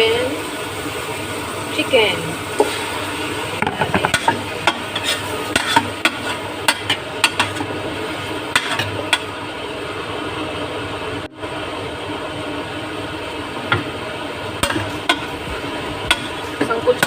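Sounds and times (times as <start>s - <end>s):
chicken sizzling in a frying pan: 0.0s - 17.0s
spatula clicking and scraping pan: 3.6s - 7.8s, 8.5s - 9.3s, 14.6s - 15.4s, 16.0s - 17.0s.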